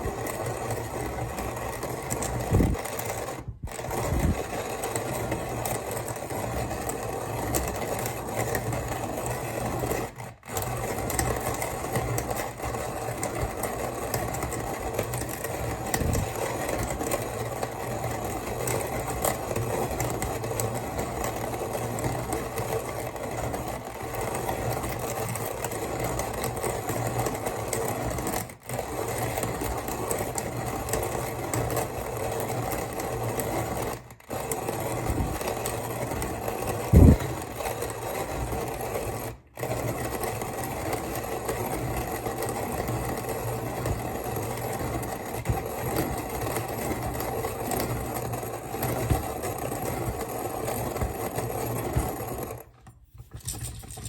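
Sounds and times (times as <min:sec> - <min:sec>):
hand coffee grinder crunching beans: 0:00.0 - 0:54.0.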